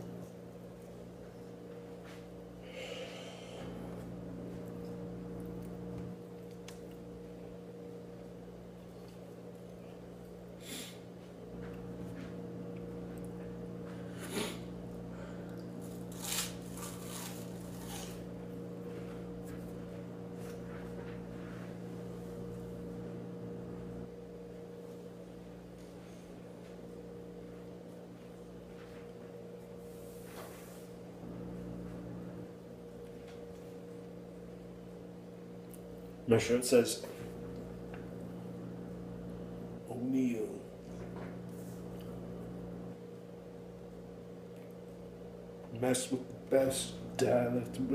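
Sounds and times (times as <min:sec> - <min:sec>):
low electrical hum: 0:00.0 - 0:47.9
man chewing toast: 0:14.9 - 0:19.7.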